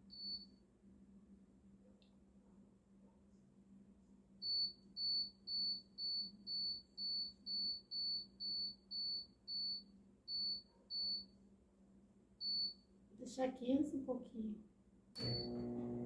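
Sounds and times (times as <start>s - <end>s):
microwave oven beeping: 0.0s - 0.5s, 4.4s - 11.3s, 15.2s - 16.0s.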